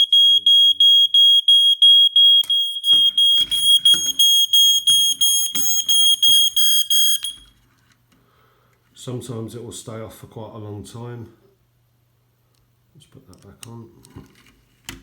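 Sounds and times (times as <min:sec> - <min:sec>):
smoke alarm beeping: 0:00.0 - 0:07.6.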